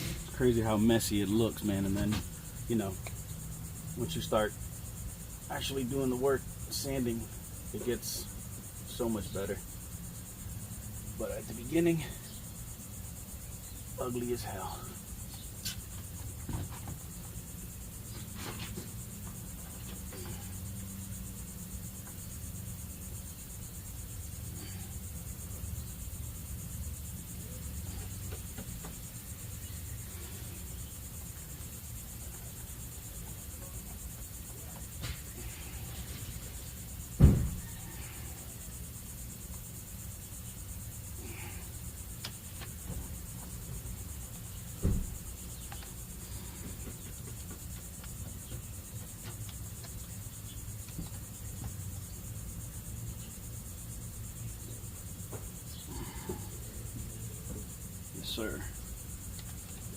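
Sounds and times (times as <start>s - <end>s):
crickets chirring: 0.0s - 59.9s
loud knock: 37.2s - 37.6s.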